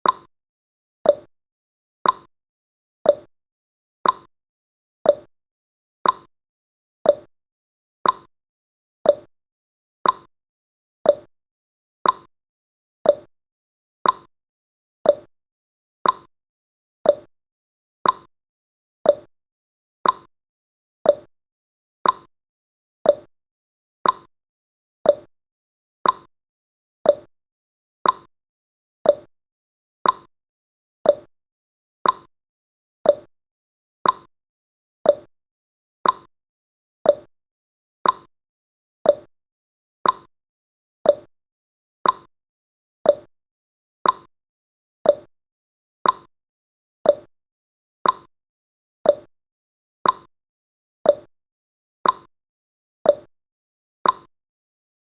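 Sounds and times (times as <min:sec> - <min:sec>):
countdown timer ticking: 0:31.1 - 0:31.3, 0:33.1 - 0:33.3, 0:35.1 - 0:35.3, 0:37.1 - 0:37.3, 0:39.1 - 0:39.3, 0:41.1 - 0:41.3, 0:43.1 - 0:43.3, 0:45.1 - 0:45.3, 0:47.1 - 0:47.3, 0:48.0 - 0:48.3, 0:49.1 - 0:49.3.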